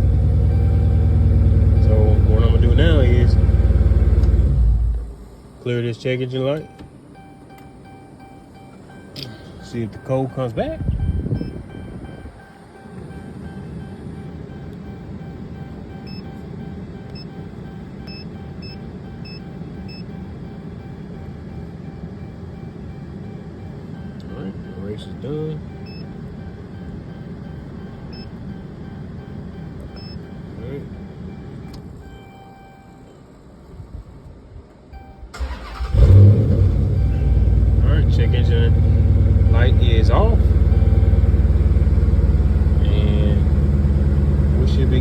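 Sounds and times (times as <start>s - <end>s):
steady low rumble: 0.0s - 35.3s, 36.0s - 45.0s
car engine revving and idling: 0.0s - 45.0s
short high electronic beeps: 6.6s - 20.6s
car engine starter cranking: 34.9s - 37.2s.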